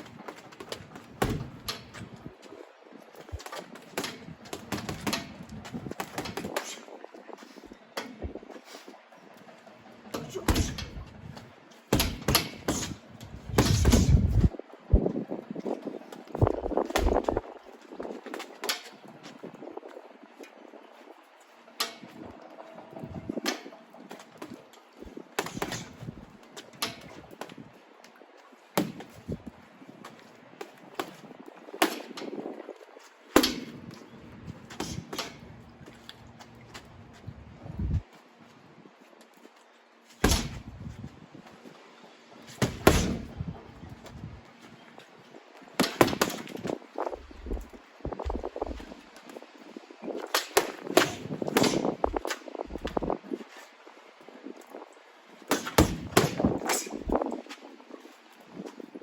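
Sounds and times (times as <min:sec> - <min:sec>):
boxing gloves hitting punch bag: 0:01.2 - 0:01.7, 0:10.2 - 0:11.0, 0:11.9 - 0:14.5, 0:40.2 - 0:41.0, 0:42.6 - 0:43.4, 0:55.5 - 0:57.0.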